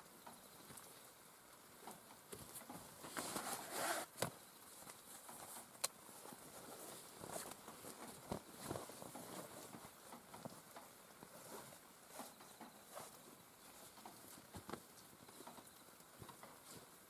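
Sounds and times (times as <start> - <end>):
light rain pattering: 0.0 - 17.0.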